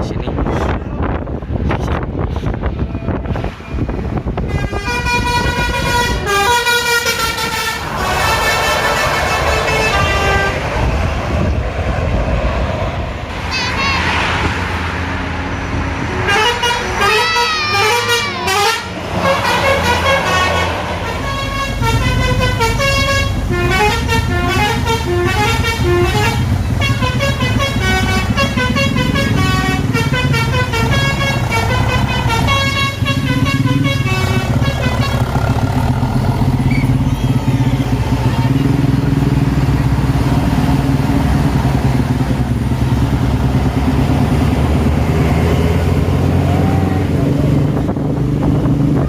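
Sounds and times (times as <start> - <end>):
bus engine rumbling: 0.0 - 49.0
multi-tone bus horn tunes: 4.4 - 10.8, 16.2 - 35.9.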